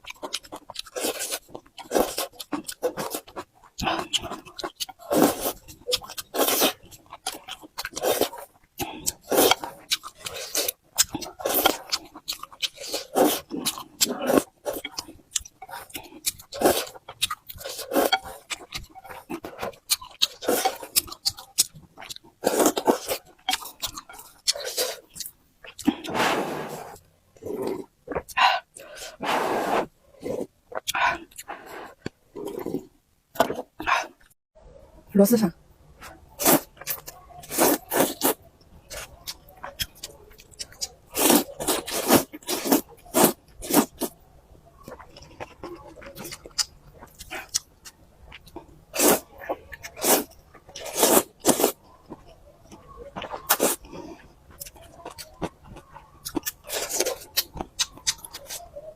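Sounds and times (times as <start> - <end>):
wet chewing of noodles: 0.0 - 34.4, 36.0 - 58.9
wet noodle slurping: 5.0 - 6.8, 12.6 - 15.0, 15.6 - 21.0, 25.8 - 32.9, 36.4 - 39.1, 41.1 - 44.1, 48.9 - 49.2, 49.8 - 51.8.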